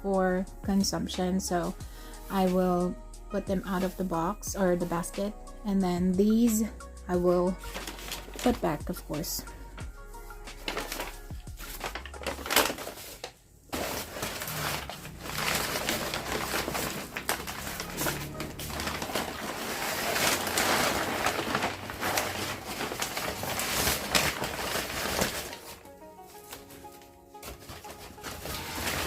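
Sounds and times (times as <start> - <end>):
paper rustling: 7.5 - 8.8, 10.4 - 29.0.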